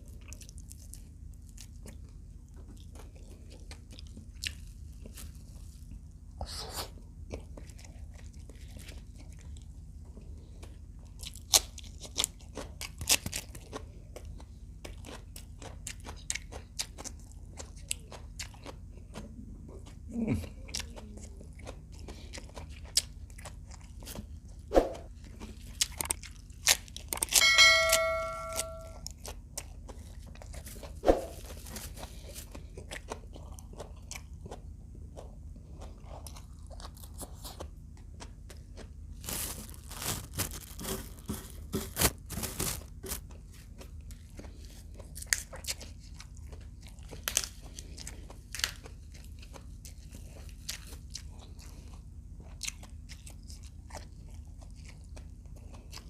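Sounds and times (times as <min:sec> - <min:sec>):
crunching and chewing: 0:00.0 - 0:56.0
ringing clink: 0:27.4 - 0:29.0.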